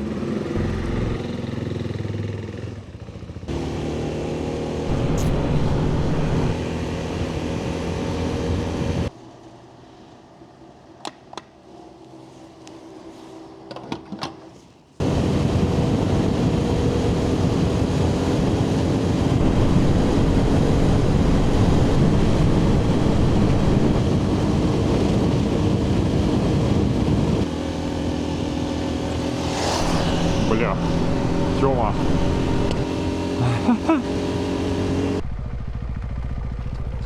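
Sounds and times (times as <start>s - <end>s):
motorcycle engine running: 0.0s - 7.7s, 18.2s - 25.2s, 27.6s - 37.0s
road and wind noise: 0.0s - 37.0s.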